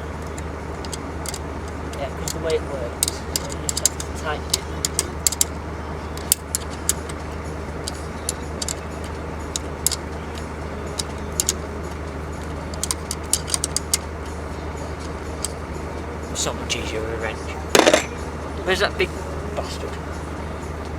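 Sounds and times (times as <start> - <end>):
metallic clicks of hand tools: 3.0 - 5.5, 6.2 - 7.2, 7.8 - 8.8, 10.9 - 11.6, 12.7 - 14.1, 17.8 - 18.1.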